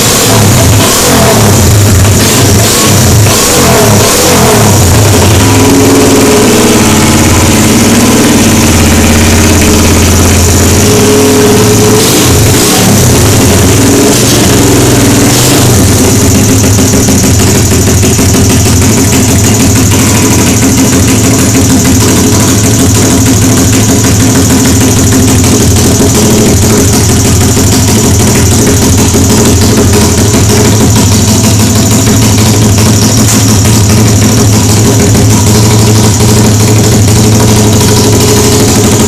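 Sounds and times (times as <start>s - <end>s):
motorcycle engine revving and idling: 0.0s - 39.0s.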